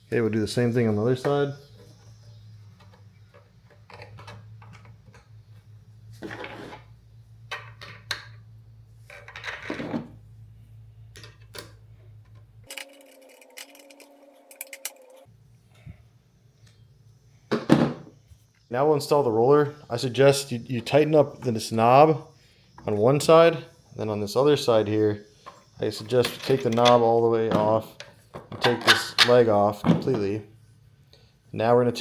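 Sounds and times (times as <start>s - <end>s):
tools and bolts clinking: 12.3s - 15.3s
metal clatter: 12.7s - 15.2s.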